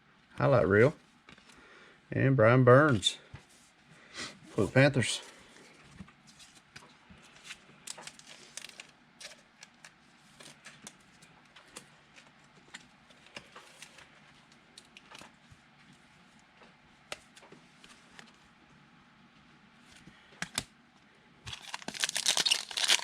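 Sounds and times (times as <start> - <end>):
trading cards being handled: 21.5 - 23.0.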